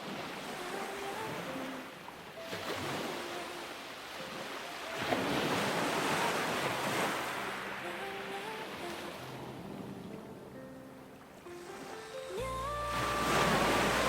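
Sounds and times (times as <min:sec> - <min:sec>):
waves surging: 0:00.0 - 0:14.0
wind: 0:00.0 - 0:14.0
soft music notes: 0:07.7 - 0:14.0.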